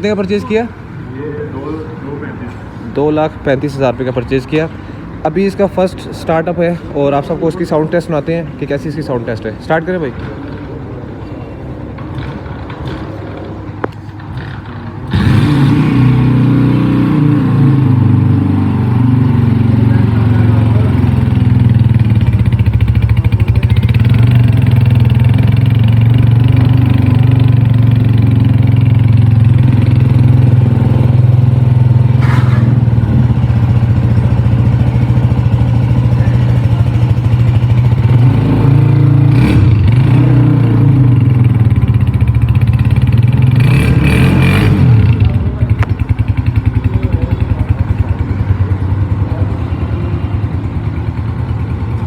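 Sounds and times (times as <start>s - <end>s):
motorcycle engine revving: 12.0s - 13.6s, 14.2s - 52.0s.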